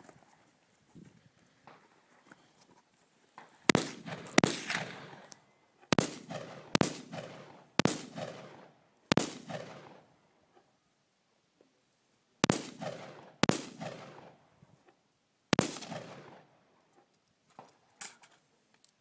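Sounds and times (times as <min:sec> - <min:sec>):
gunshots with echo: 0:03.7 - 0:05.3, 0:05.9 - 0:10.1, 0:12.4 - 0:14.4, 0:15.6 - 0:16.5.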